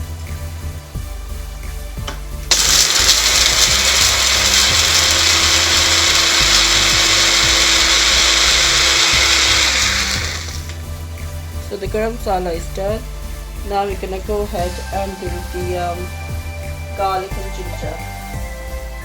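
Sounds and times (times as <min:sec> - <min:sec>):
electric spice grinder running: 0:02.5 - 0:11.0.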